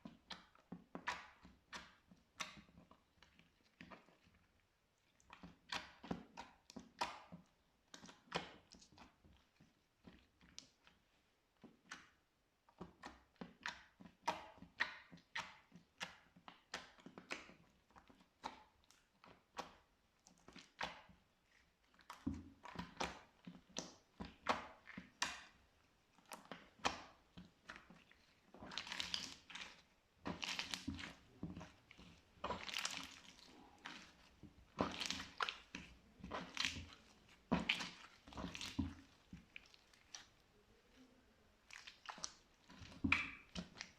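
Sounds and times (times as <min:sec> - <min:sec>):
slime popping and squelching: 0:12.8 - 0:43.9.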